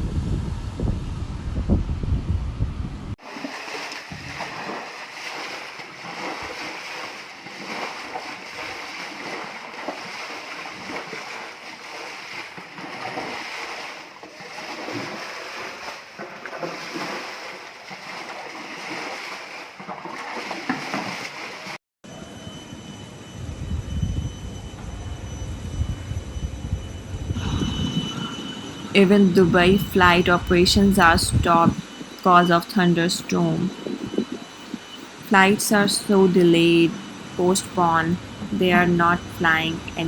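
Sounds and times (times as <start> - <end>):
steady high-pitched tones: 22.1 - 40.0.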